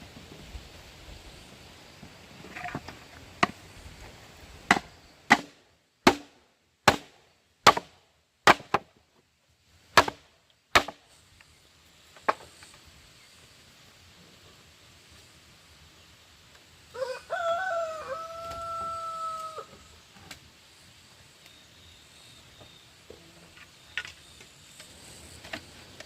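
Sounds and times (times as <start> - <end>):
tool striking wood: 4.7 - 8.9, 10.0 - 10.2, 10.8 - 11.0.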